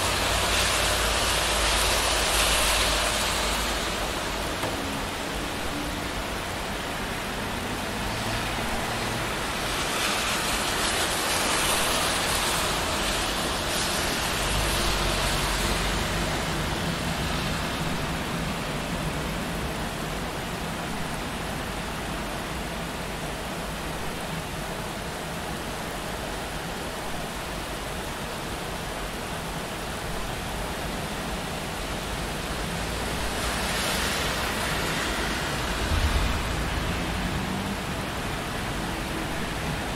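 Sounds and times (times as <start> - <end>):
steady rain on street: 0.0 - 39.9
traffic on wet road: 0.0 - 39.9
low rumble: 35.6 - 38.8.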